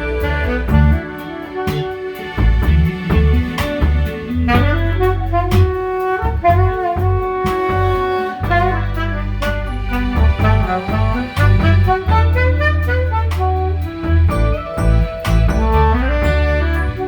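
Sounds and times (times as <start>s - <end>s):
drum beat: 0.0s - 16.0s
bass line: 0.0s - 17.0s
jazz saxophone tune: 0.0s - 17.0s.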